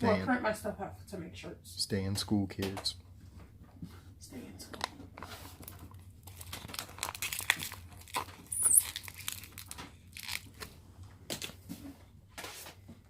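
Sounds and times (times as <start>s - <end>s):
packaging crinkling and tearing: 5.2s - 11.6s
high squeak: 8.5s - 9.0s.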